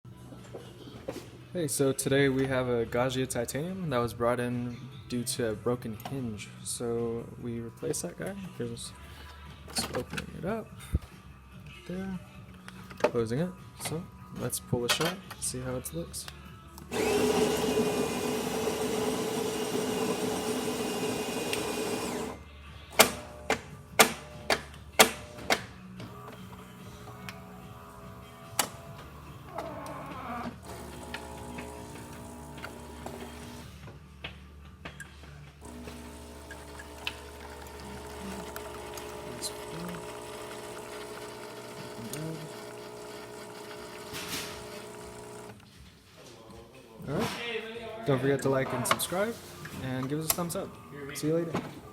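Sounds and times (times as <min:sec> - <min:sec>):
espresso machine motor hum: 0:16.9 - 0:22.4, 0:26.1 - 0:33.7, 0:35.6 - 0:45.6.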